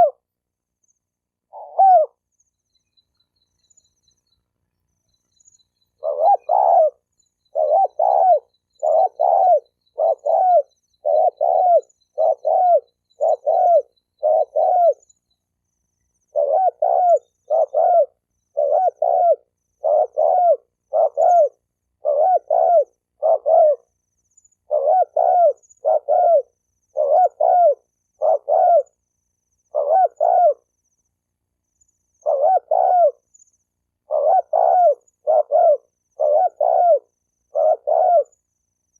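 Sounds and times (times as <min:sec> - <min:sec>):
dove cooing: 0:00.0 - 0:00.2, 0:01.4 - 0:02.3, 0:05.9 - 0:15.0, 0:16.3 - 0:23.9, 0:24.7 - 0:29.0, 0:29.7 - 0:30.7, 0:32.2 - 0:33.3, 0:34.0 - 0:38.4.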